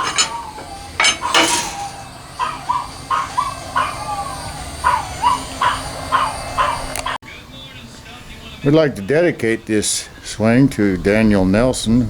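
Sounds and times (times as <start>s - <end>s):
dog yapping: 0.0s - 7.2s.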